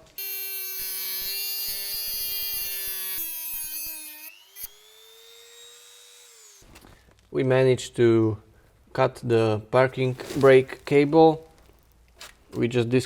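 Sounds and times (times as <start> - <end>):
power tool cutting steel cable: 0.0 - 6.9.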